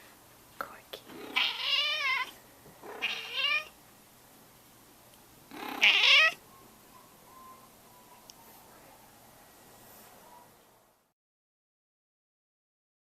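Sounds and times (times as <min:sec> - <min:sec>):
cat meowing: 0:01.2 - 0:02.3, 0:02.9 - 0:03.8, 0:05.5 - 0:06.4.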